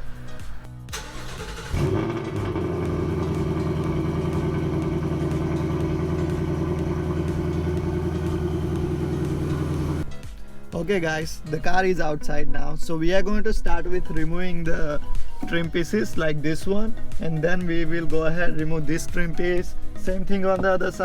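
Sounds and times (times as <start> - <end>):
car engine starting and idling: 0.0 - 10.1.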